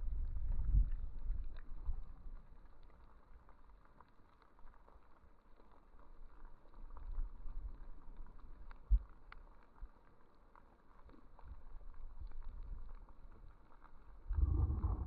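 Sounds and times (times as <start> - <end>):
underwater water rumble: 0.0 - 5.7, 11.0 - 15.0.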